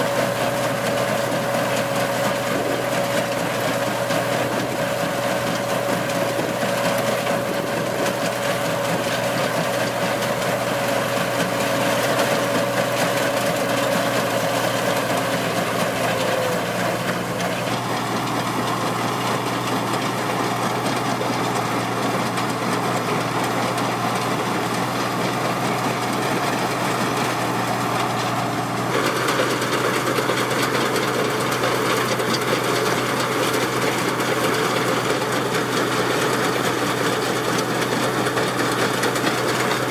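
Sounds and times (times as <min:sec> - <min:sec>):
combine harvester humming: 0:00.0 - 0:39.9.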